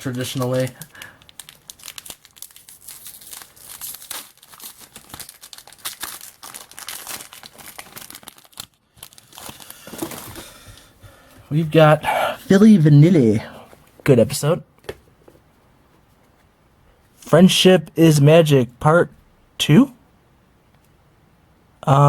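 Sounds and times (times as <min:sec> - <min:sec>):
card pack wrapper crinkling and tearing: 0:00.0 - 0:10.7.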